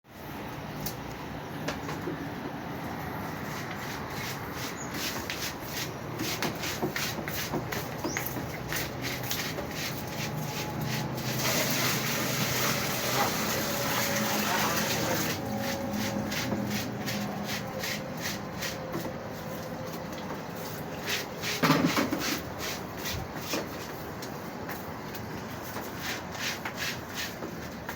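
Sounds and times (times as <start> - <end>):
washing machine running: 8.9 - 21.0
rush of water: 11.3 - 15.4.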